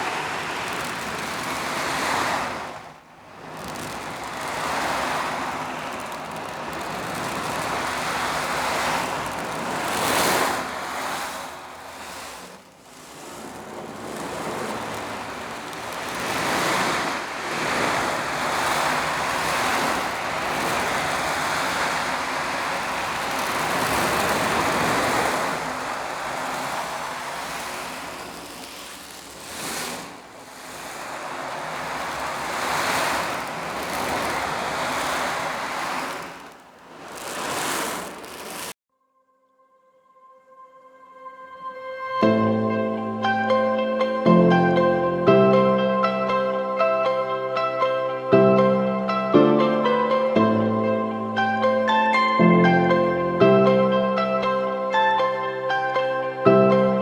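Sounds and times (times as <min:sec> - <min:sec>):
foley sea surf hiss: 0:00.0 - 0:38.8.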